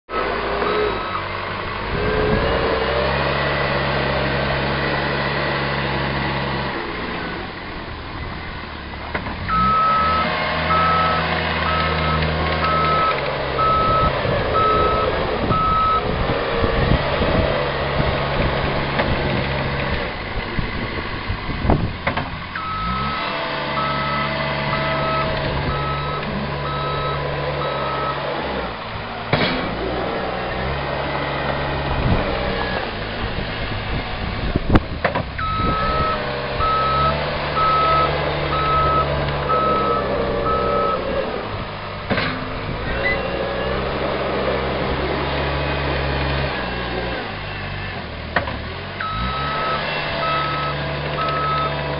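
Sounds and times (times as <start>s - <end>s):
loader diesel engine whining: 0.1s - 51.9s
reverse alarm beeping: 9.5s - 16.1s, 22.6s - 23.2s, 23.8s - 28.2s, 35.4s - 41.0s.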